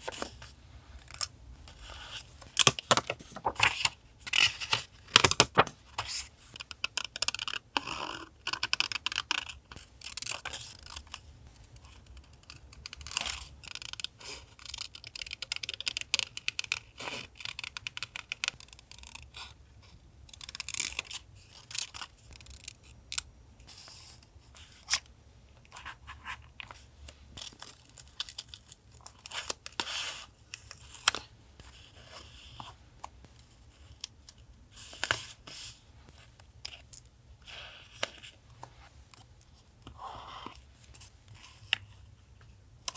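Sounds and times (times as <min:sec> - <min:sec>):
paper rustling: 0:01.8 - 0:06.2.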